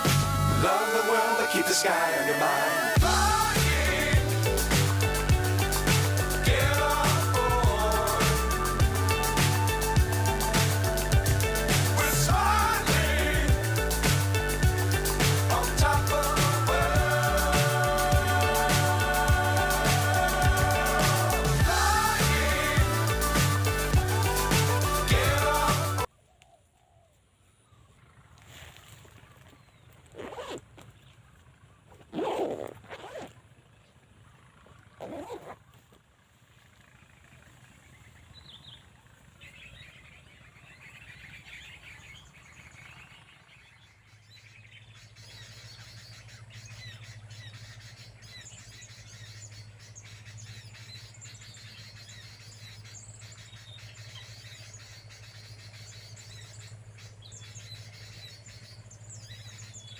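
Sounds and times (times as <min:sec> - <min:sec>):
small birds chirping: 0:00.0 - 0:59.9
steady low hum: 0:03.0 - 0:26.1.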